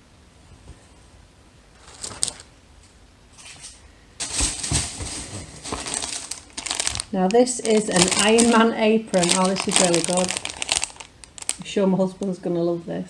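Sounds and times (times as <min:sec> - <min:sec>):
packaging crinkling: 0:01.8 - 0:02.5, 0:04.2 - 0:11.8.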